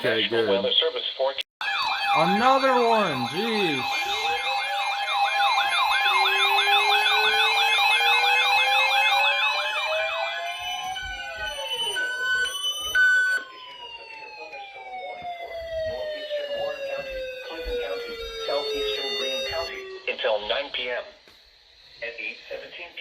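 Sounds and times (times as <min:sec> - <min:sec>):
siren fast yelp: 0:01.6 - 0:20.6
siren slow wail: 0:01.6 - 0:22.0
steady siren tone: 0:01.6 - 0:23.0.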